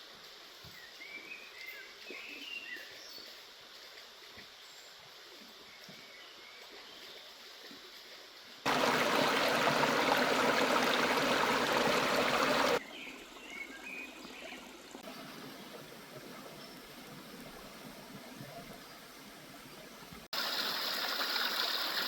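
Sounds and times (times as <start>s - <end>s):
stream rushing water: 8.7s - 18.3s, 20.3s - 22.0s.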